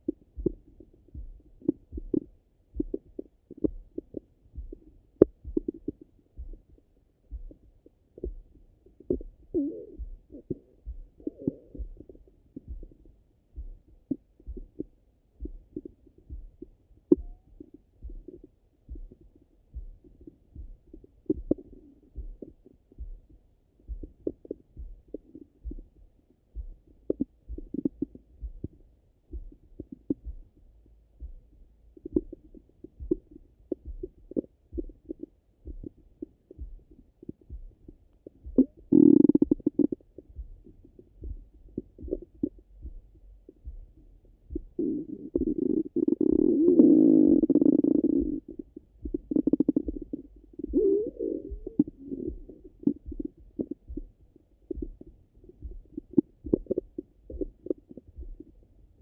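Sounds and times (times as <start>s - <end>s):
pulse-like thumping: 0.3s - 7.6s, 14.5s - 23.3s, 32.1s - 36.0s, 36.6s - 58.5s
stomach gurgles: 7.5s - 13.0s, 38.2s - 40.3s, 44.5s - 58.6s
loud stomach rumble: 9.0s - 12.9s, 38.4s - 40.0s, 44.5s - 54.1s, 54.7s - 58.5s.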